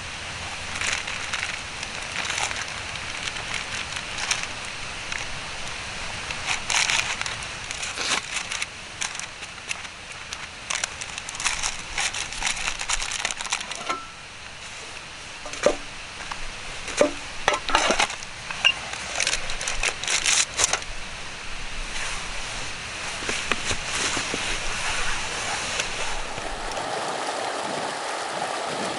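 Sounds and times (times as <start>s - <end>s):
sharp clicks and crackles: 0.7s - 14.1s, 15.5s - 20.9s.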